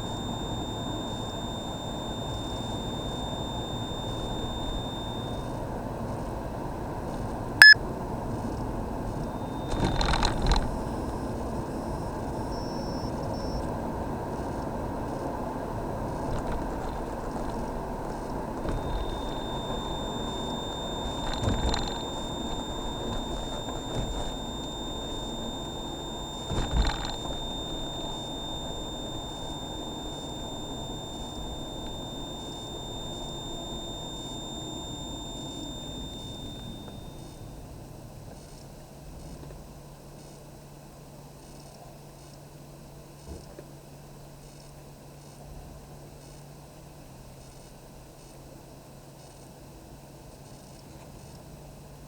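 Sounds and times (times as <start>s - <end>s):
car interior road and engine noise: 0.0s - 37.2s
high-pitched dashboard whine: 0.0s - 38.3s
brief thumps: 16.2s - 37.2s.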